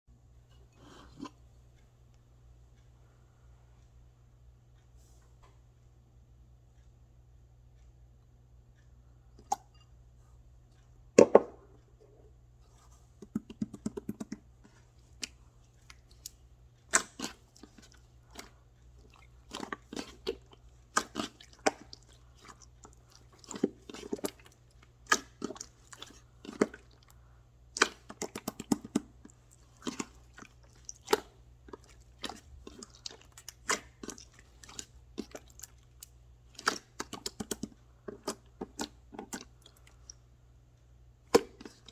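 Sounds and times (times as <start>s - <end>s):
crunchy food chewing: 15.0s - 40.2s.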